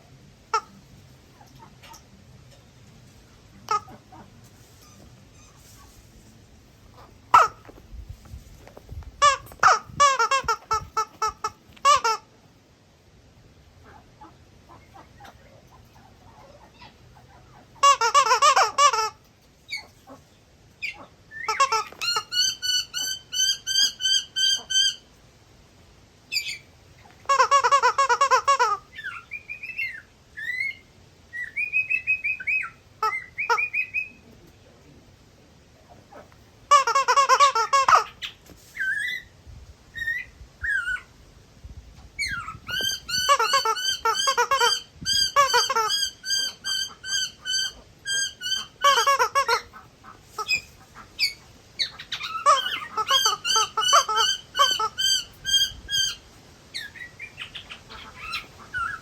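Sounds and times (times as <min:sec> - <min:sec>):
parrot squawking: 0:20.8 - 0:25.1, 0:31.4 - 0:34.2, 0:40.0 - 0:41.1, 0:42.2 - 0:59.0.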